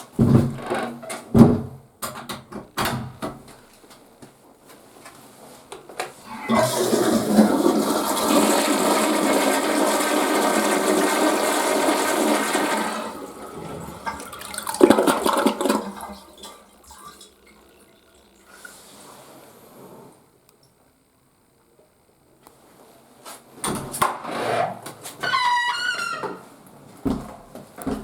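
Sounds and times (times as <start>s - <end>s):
toilet flushing: 6.2s - 19.5s.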